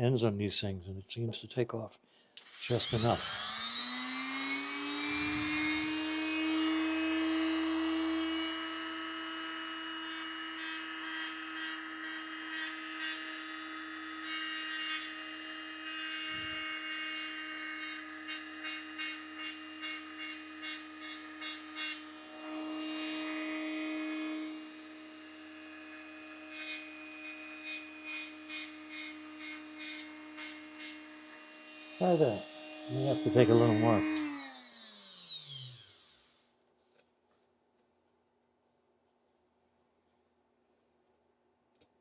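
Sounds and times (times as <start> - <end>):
electric grinder running: 2.4 - 36.4
metal ring rasping on grinder: 32.0 - 34.2.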